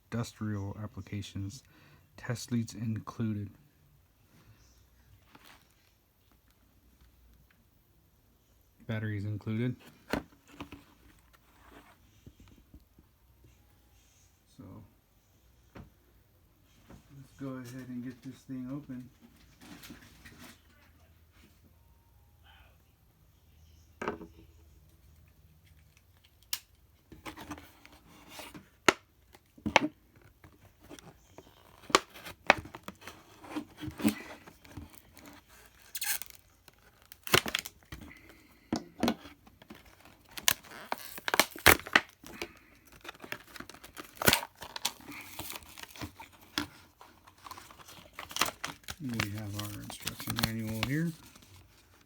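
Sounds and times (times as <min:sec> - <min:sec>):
packaging tearing and crinkling: 0:31.5 - 0:37.9, 0:39.6 - 0:51.7.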